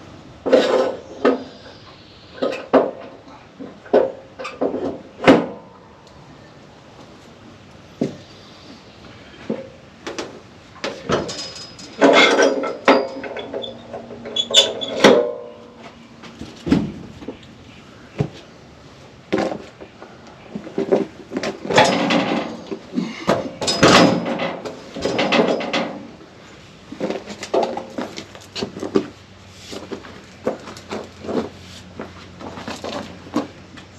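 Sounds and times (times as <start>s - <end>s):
knocks and clunks: 2.4s - 5.7s, 9.4s - 17.4s, 19.3s - 26.1s.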